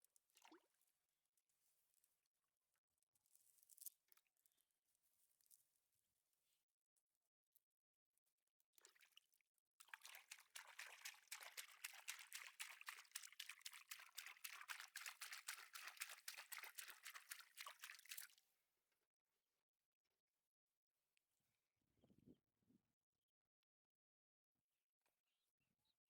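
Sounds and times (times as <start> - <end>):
water splashing and pattering: 9.8 - 18.4.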